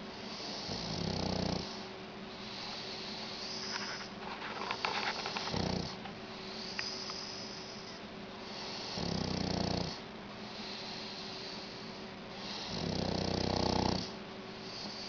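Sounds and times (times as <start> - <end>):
dog snoring: 0.2 - 4.1, 4.7 - 15.0
high hissing breath: 1.6 - 9.2, 10.4 - 13.0, 14.0 - 15.0.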